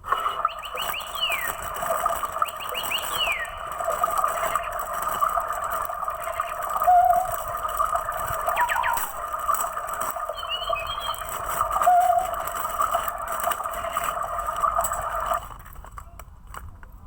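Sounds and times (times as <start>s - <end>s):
toy bird chirping: 0.2s - 5.6s, 6.2s - 12.5s.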